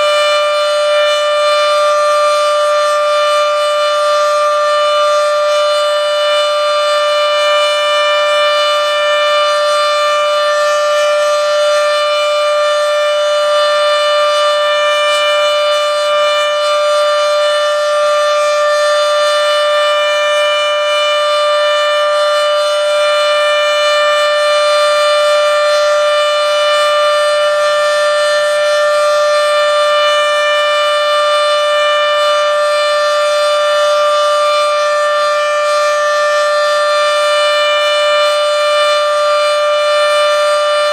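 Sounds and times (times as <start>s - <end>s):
outdoor warning siren steady tone: 0.0s - 40.9s.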